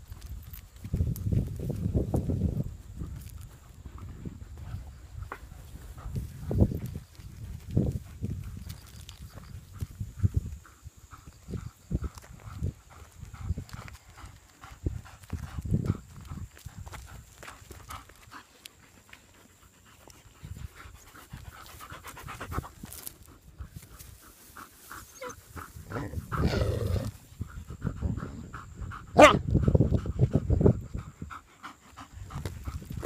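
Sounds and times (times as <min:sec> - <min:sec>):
rapid rhythmic panting: 0:27.5 - 0:33.0.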